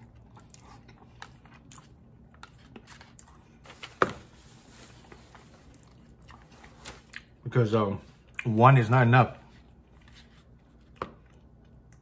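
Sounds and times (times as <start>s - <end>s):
faint chewing: 0.0s - 3.9s, 5.0s - 7.4s.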